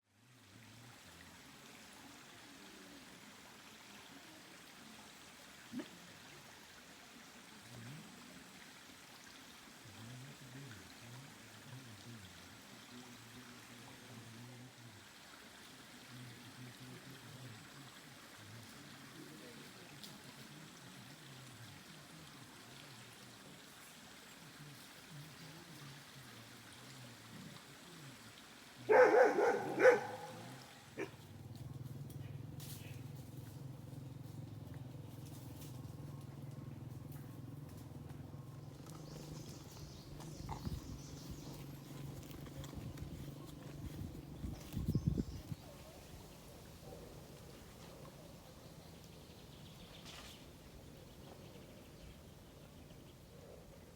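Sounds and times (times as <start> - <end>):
soft steady hiss: 0.1 - 53.9
distant frogs croaking: 28.9 - 31.2.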